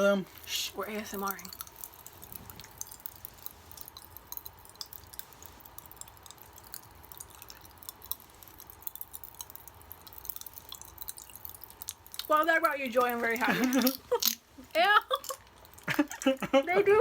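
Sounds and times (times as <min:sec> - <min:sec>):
popping candy crackling: 0:00.0 - 0:17.0.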